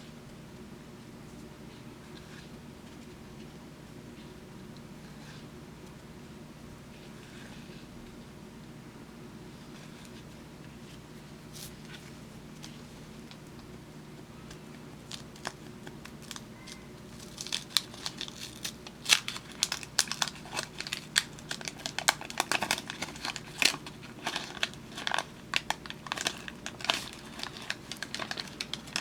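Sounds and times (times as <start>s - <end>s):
wax paper wrapper tearing and crinkling: 15.0s - 29.0s.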